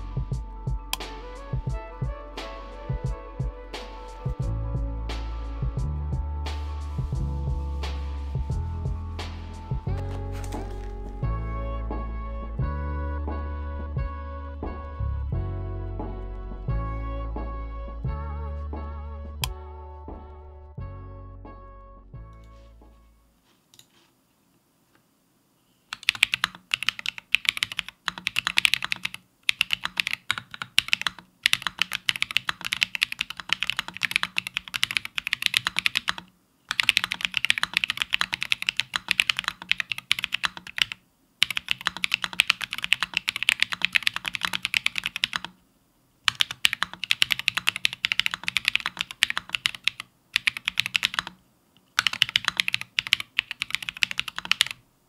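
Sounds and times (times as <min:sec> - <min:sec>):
mechanical keyboard typing: 0:25.9 - 0:45.6, 0:46.3 - 0:54.8.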